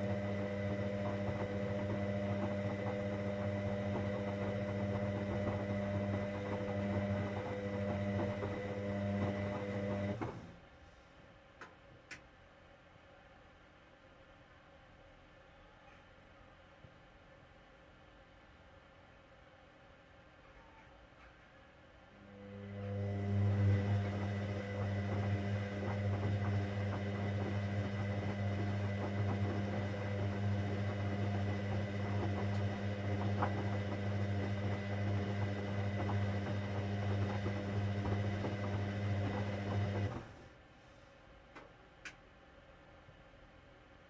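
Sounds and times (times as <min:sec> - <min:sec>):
washing machine pump running: 0:00.0 - 0:10.6, 0:22.4 - 0:40.6.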